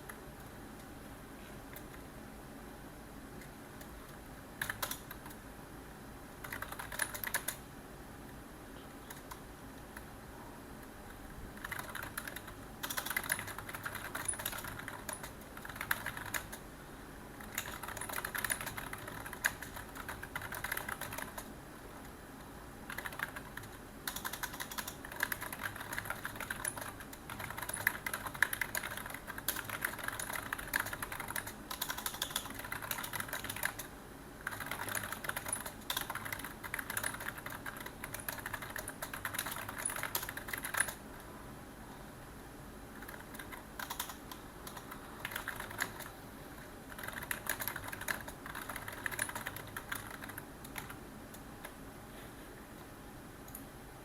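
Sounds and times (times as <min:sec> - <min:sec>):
low steady hum: 0:00.0 - 0:54.0
computer keyboard typing: 0:01.7 - 0:02.0, 0:04.6 - 0:05.4, 0:06.3 - 0:07.6, 0:09.0 - 0:10.1, 0:11.1 - 0:16.6, 0:17.4 - 0:21.5, 0:22.8 - 0:41.0, 0:43.0 - 0:51.0.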